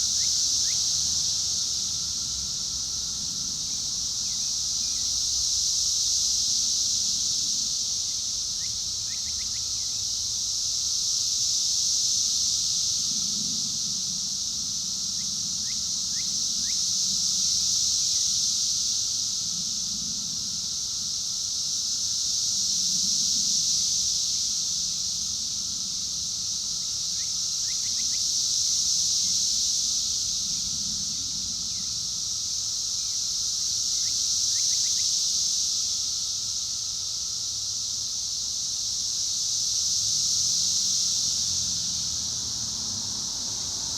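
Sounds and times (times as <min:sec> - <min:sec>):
cicadas buzzing: 0:00.0 - 0:43.9.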